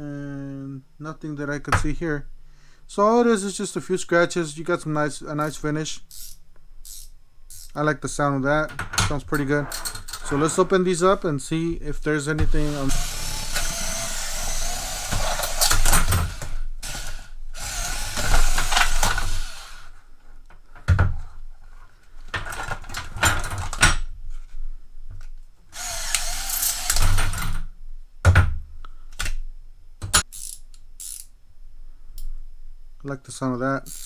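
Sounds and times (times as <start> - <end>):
ratcheting wrench clicking: 6.1 - 7.8, 30.2 - 31.3.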